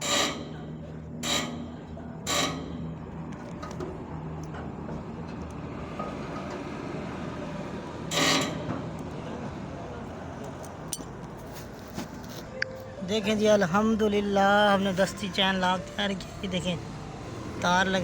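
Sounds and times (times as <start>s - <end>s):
vehicle engines humming: 0.0s - 18.0s.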